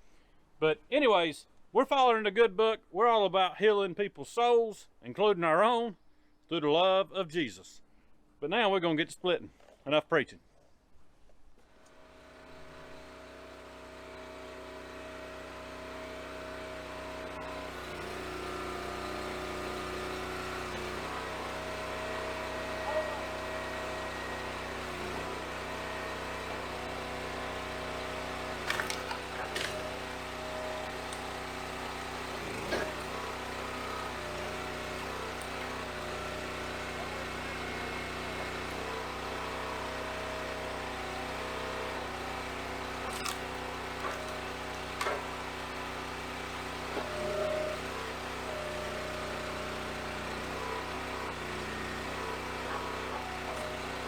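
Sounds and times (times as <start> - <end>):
log splitter engine running: 11.8 - 54.0
wood cracking: 28.5 - 31.4, 43.0 - 45.9.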